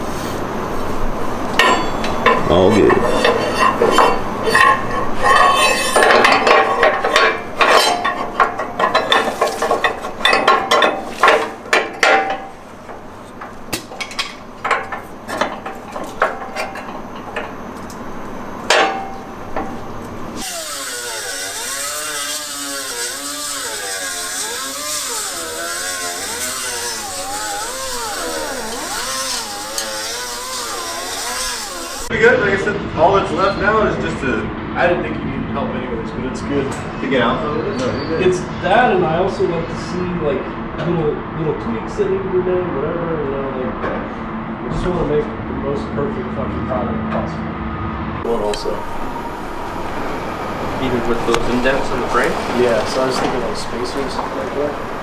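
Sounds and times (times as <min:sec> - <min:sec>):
steady wavering tone: 0:00.7 - 0:09.6, 0:48.3 - 0:52.1
ratcheting hand tools: 0:01.5 - 0:32.1.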